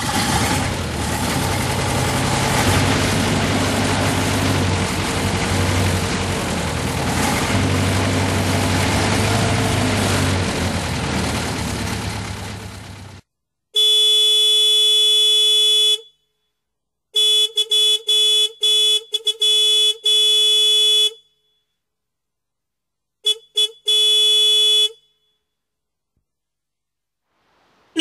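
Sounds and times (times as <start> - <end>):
horn honking: 0.6 - 13.2, 13.8 - 16.2, 17.2 - 21.4, 23.2 - 25.4.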